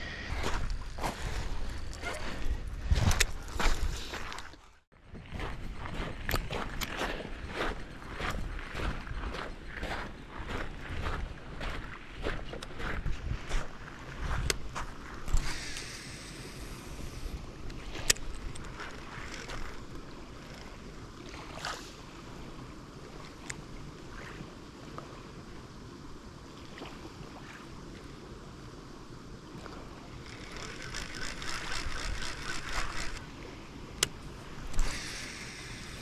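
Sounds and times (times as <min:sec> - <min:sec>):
small waves lapping: 0:00.0 - 0:36.0
wind: 0:00.0 - 0:36.0
rapid ticking: 0:30.2 - 0:33.2.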